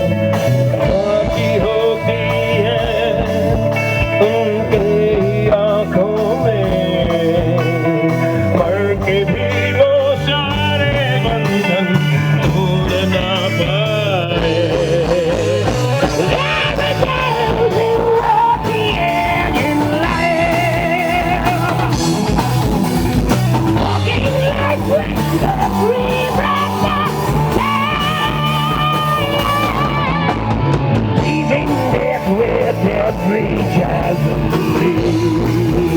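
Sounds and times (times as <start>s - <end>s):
rock band playing live: 0.0s - 35.9s
singer holding wavering notes: 0.0s - 35.9s.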